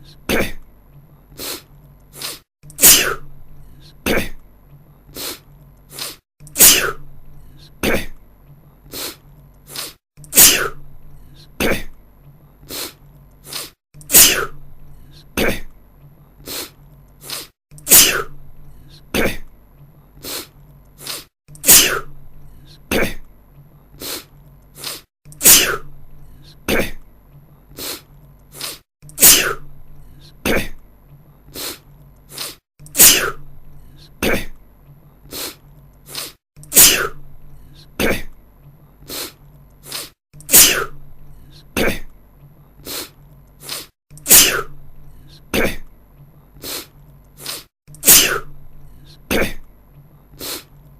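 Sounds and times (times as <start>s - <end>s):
man sneezing: 0.3s - 0.6s, 2.2s - 3.2s, 4.0s - 4.4s, 6.0s - 7.0s, 7.8s - 8.1s, 9.8s - 10.8s, 11.6s - 11.9s, 13.5s - 14.6s, 15.4s - 15.7s, 17.4s - 18.3s, 19.1s - 19.4s, 21.1s - 22.1s, 22.9s - 23.2s, 24.8s - 25.9s, 26.7s - 27.0s, 28.6s - 29.6s, 30.4s - 30.8s, 32.4s - 33.4s, 34.2s - 34.5s, 36.1s - 37.2s, 38.0s - 38.3s, 39.2s - 41.0s, 41.8s - 42.1s, 43.7s - 44.8s, 45.5s - 45.8s, 46.8s - 48.5s, 49.3s - 49.6s.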